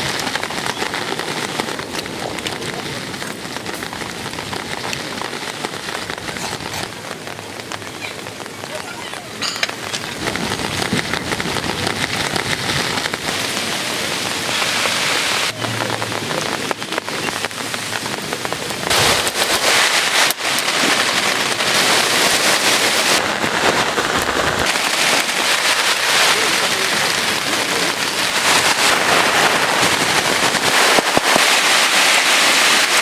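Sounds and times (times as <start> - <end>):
heavy rain falling: 0.0 - 33.0.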